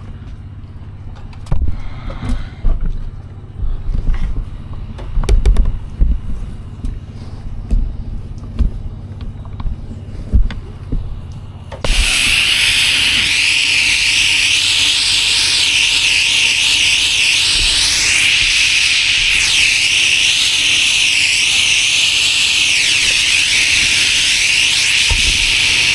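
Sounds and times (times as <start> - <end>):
pressure washer spraying: 11.9 - 25.9.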